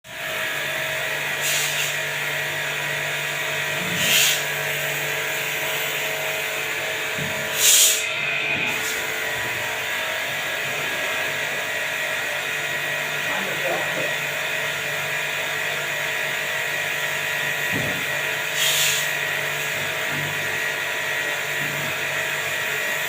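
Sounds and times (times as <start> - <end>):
mechanical hum: 0.1 - 23.0
short hissing bursts: 4.0 - 4.4, 7.5 - 8.0, 18.6 - 19.1.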